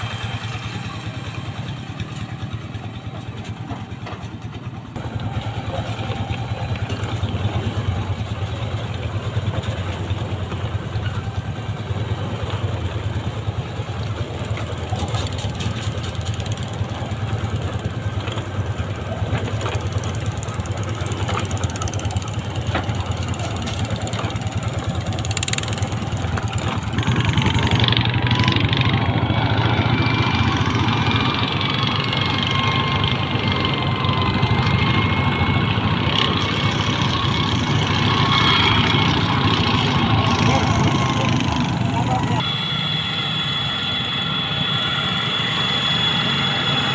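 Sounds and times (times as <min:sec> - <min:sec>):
tractor engine idling: 0:00.0 - 0:46.9
high wavering whine: 0:22.1 - 0:46.9.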